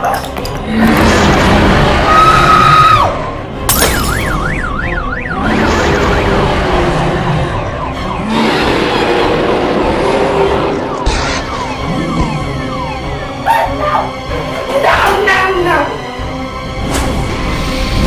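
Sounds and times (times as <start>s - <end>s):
background music: 0.0s - 18.0s
siren yelping: 4.0s - 9.1s, 10.7s - 14.3s.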